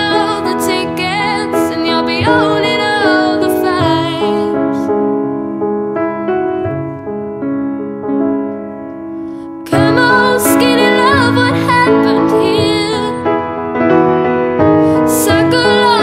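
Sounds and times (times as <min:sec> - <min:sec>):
piano chords: 0:00.0 - 0:16.0
person singing: 0:15.0 - 0:16.0.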